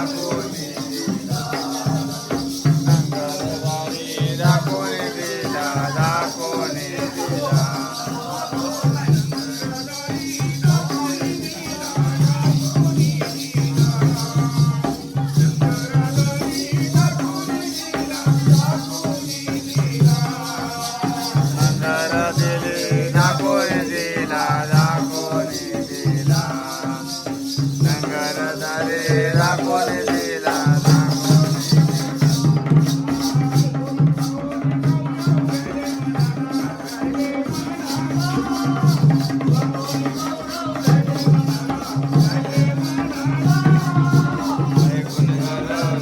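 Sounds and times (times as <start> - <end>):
person singing: 0.0 - 46.0
rhythmic jingling percussion: 0.0 - 46.0
steady drum beat: 0.0 - 46.0.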